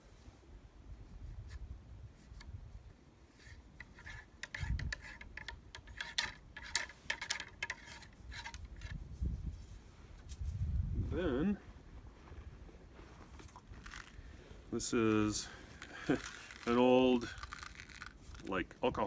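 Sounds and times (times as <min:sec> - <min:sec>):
small clicks taps and scraping: 0:03.8 - 0:09.0.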